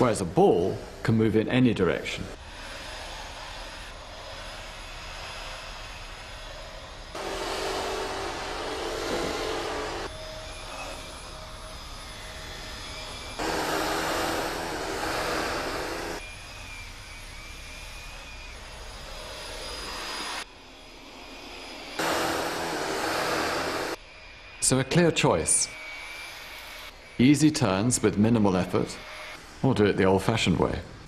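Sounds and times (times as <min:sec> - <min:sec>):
upright vacuum cleaner running: 0:07.1 - 0:16.2, 0:22.0 - 0:24.0.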